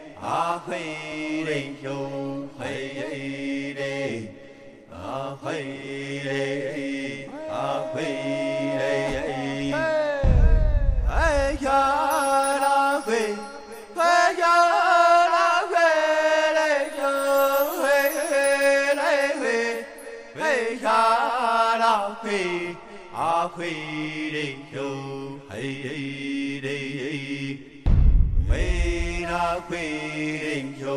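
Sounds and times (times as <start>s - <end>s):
person chanting: 0.0s - 27.7s, 28.5s - 30.9s
deep boom: 10.2s - 12.1s, 27.9s - 29.7s.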